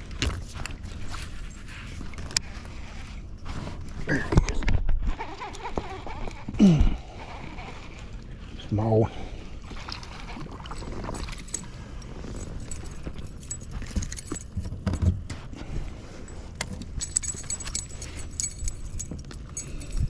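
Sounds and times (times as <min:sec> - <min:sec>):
fishing tackle jingling and clicking: 0:09.6 - 0:15.3, 0:16.2 - 0:20.0.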